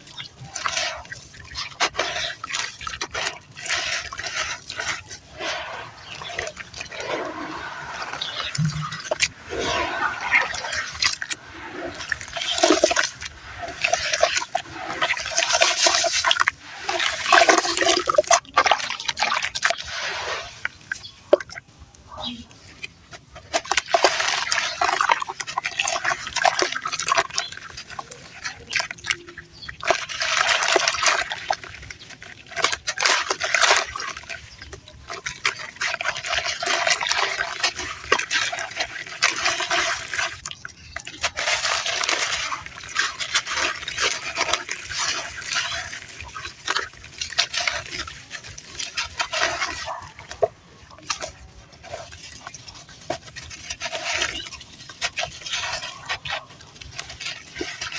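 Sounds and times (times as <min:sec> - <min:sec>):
sand crunching: 0:00.0 - 0:21.2.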